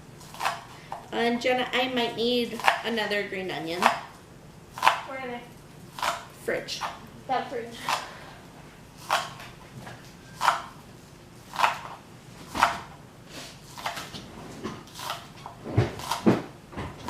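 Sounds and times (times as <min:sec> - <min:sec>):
knife chopping on cutting board: 0:04.8 - 0:05.1, 0:09.0 - 0:09.5, 0:10.4 - 0:10.8, 0:11.5 - 0:13.0, 0:13.7 - 0:14.2, 0:14.8 - 0:17.0.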